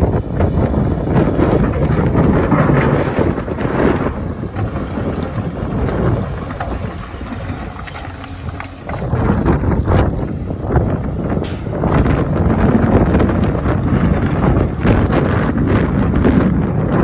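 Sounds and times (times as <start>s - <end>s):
excavator diesel engine: 0.0s - 17.0s
bucket scraping on stone: 6.6s - 9.2s.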